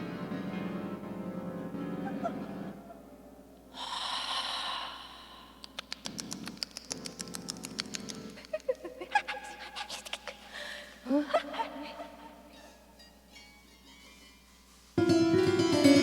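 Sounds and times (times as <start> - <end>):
breathy whoosh: 3.7 - 5.9
objects crackling and clicking: 5.6 - 8.8.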